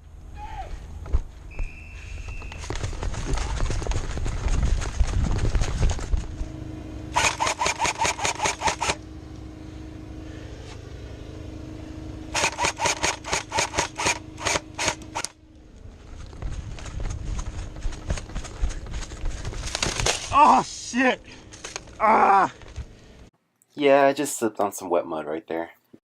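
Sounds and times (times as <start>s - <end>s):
running footsteps: 0.6s - 6.6s, 12.4s - 20.3s
airsoft gun firing: 7.2s - 9.0s, 12.4s - 15.3s.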